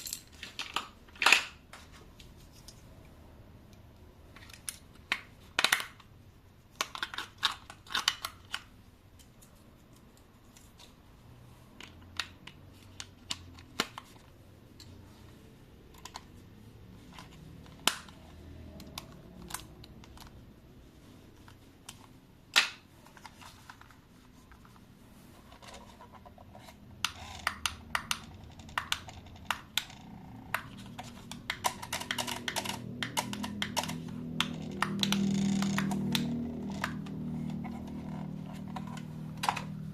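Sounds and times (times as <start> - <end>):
plastic clicks and taps: 27.0 - 38.0.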